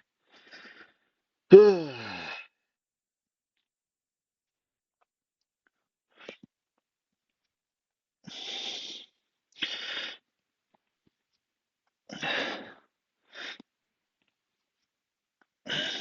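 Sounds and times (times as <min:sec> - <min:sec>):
man breathing hard: 0:00.2 - 0:02.5, 0:12.1 - 0:13.7.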